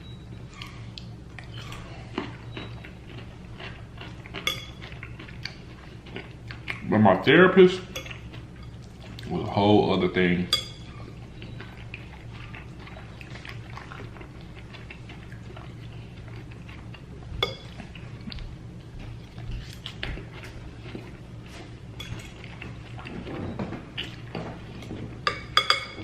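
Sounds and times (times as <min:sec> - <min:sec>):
low hum: 0:00.0 - 0:26.0
fork clinking on a plate: 0:04.4 - 0:05.0, 0:25.2 - 0:26.0.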